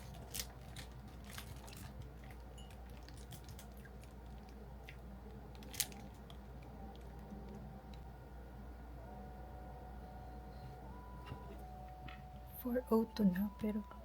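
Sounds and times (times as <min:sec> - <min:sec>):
faint clicks and crunches: 0:00.0 - 0:08.0
low steady hum: 0:00.0 - 0:14.0.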